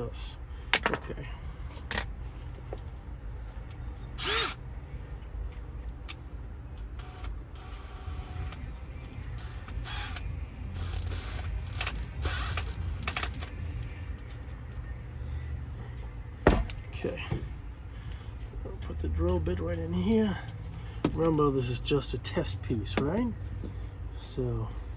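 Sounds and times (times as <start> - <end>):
steady low rumble: 0.0 - 24.9
drill bits clicking and rattling: 4.2 - 4.6.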